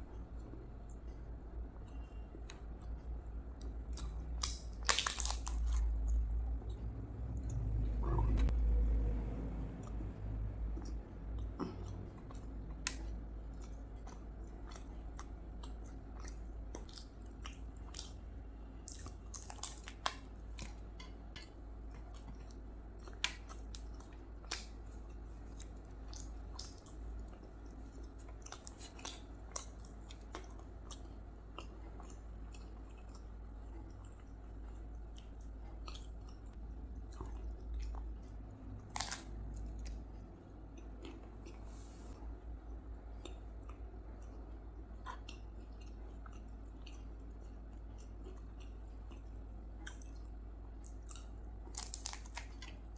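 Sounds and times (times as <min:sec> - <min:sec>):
person chewing: 0:00.0 - 0:08.5, 0:09.7 - 0:52.9
steady low hum: 0:00.0 - 0:52.9.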